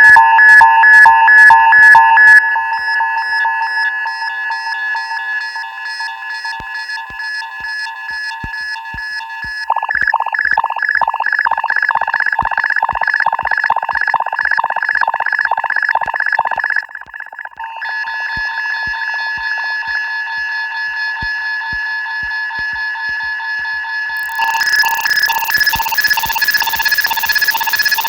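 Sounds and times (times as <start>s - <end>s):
electronic alarm tones pulsing: 9.6s - 18.0s, 24.2s - 28.0s
low ticks: 9.7s - 17.6s
warbling alarm pulse: 9.7s - 17.8s, 24.2s - 28.0s.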